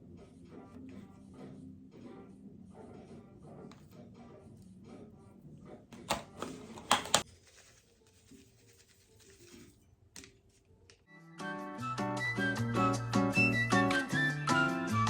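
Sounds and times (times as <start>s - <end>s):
background music with steady beat: 0.0s - 7.3s, 10.9s - 15.0s.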